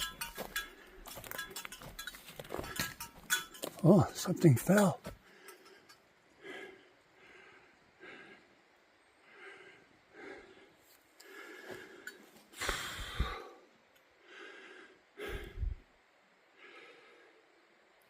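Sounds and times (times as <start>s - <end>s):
person breathing hard: 5.1s - 15.9s, 16.5s - 17.7s.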